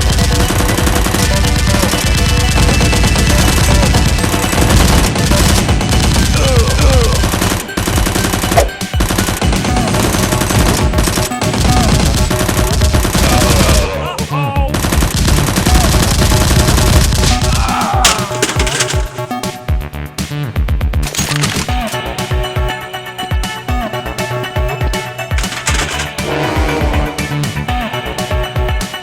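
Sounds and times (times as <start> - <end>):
automatic gunfire: 0.0 - 13.9, 14.8 - 17.5, 25.4 - 26.5
background music: 0.0 - 29.0.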